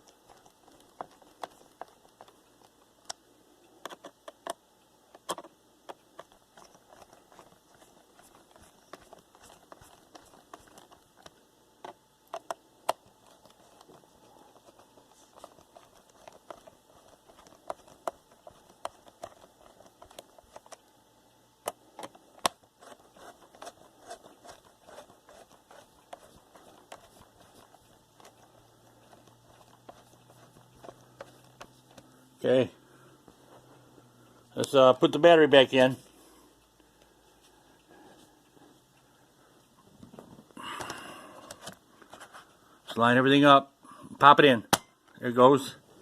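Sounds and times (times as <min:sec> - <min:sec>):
screwdriver clicking on plastic case: 0:03.8 - 0:20.9.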